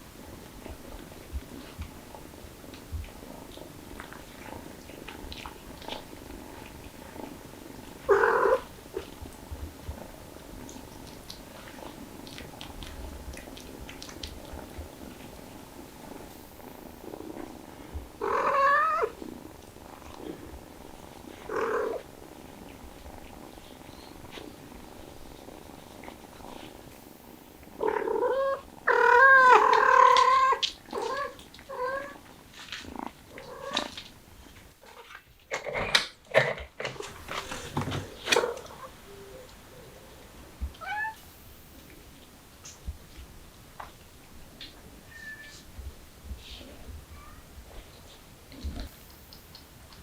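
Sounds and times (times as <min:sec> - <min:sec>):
cats meowing: 0:08.0 - 0:09.1, 0:18.2 - 0:19.2, 0:21.3 - 0:22.0, 0:27.8 - 0:32.2, 0:40.6 - 0:41.2, 0:45.0 - 0:45.7, 0:47.1 - 0:47.5.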